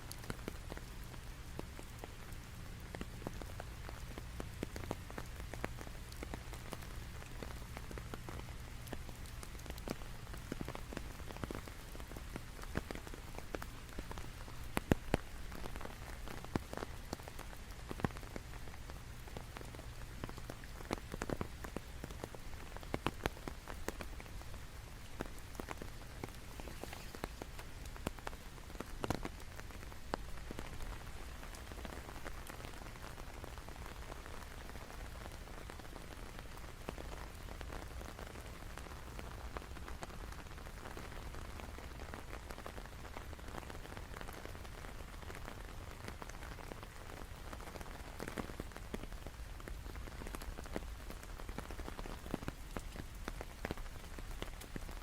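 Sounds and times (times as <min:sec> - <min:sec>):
low steady hum: 0:00.0 - 0:39.8
raindrops tapping close by: 0:00.0 - 0:55.0
steady rain falling: 0:00.0 - 0:55.0.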